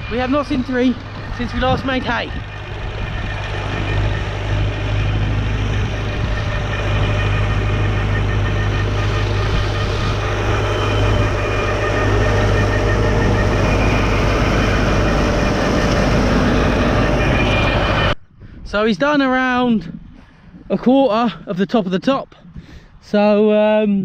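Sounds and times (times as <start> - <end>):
engine humming: 0.0 - 18.2.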